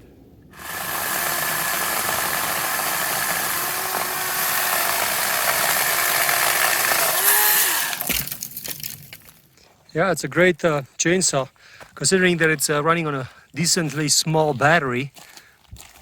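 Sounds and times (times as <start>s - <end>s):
electric chainsaw whine: 0.5s - 8.3s
chain cutting wood: 0.6s - 9.3s.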